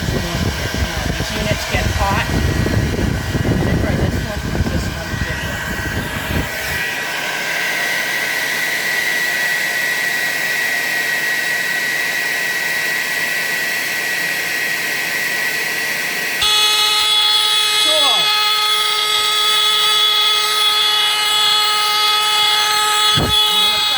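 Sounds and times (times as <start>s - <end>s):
alarm horn blaring: 0.0s - 7.0s, 16.4s - 23.9s
hair dryer blowing with whine: 0.0s - 23.9s.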